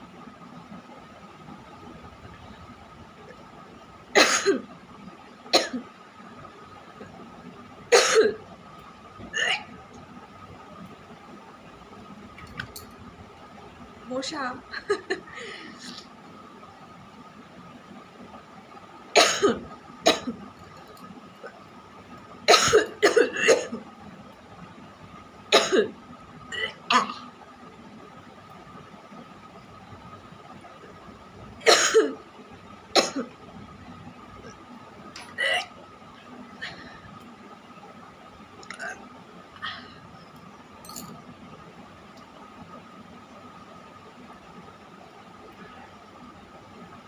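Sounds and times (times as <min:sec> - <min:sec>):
person coughing hard: 0:04.2 - 0:04.6, 0:05.6 - 0:05.8, 0:07.9 - 0:08.4, 0:19.2 - 0:20.4, 0:22.5 - 0:23.8, 0:25.6 - 0:25.9, 0:31.7 - 0:32.2, 0:33.0 - 0:33.3.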